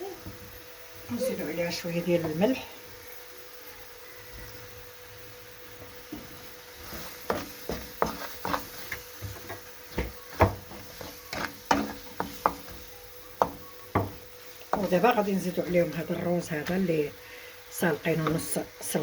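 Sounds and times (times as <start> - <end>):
spoon stirring in a pot: 6.2 - 17.2, 17.8 - 19.0
spoon knocking against pot: 9.3 - 15.1.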